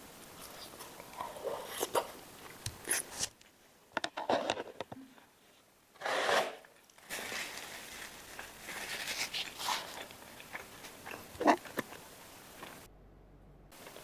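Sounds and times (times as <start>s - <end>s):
crackly chewing: 0.0s - 3.4s, 7.0s - 12.9s, 13.7s - 14.0s.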